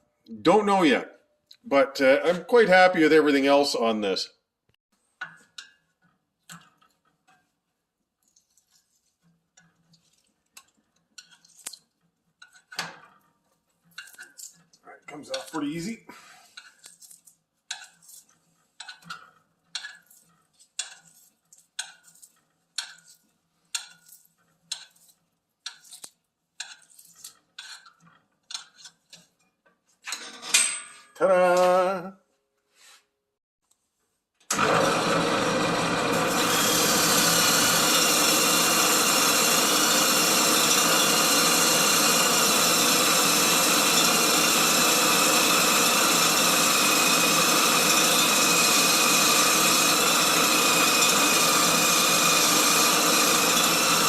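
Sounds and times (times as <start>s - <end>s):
power tool running: 34.5s - 54.0s.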